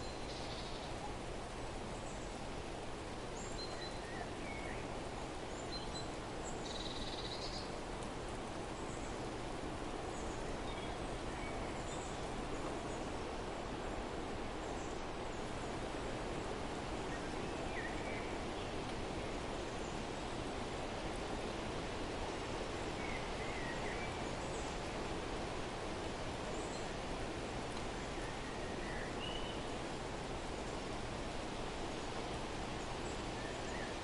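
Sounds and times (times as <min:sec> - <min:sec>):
faint bird chirps: 0:00.0 - 0:01.2, 0:03.4 - 0:04.9, 0:05.5 - 0:07.8
outdoor background noise: 0:00.0 - 0:34.0.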